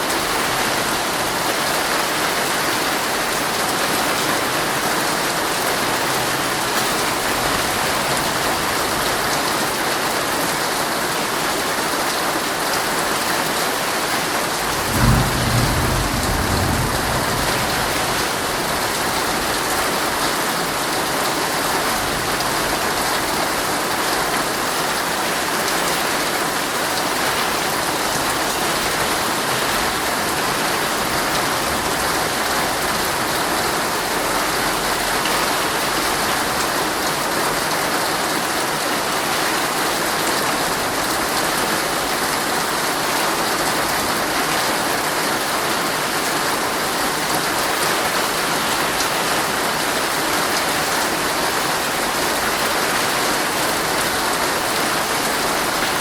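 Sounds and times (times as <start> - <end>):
heavy rain on a tent: 0.0 - 56.0
low rumble of thunder: 14.6 - 20.2.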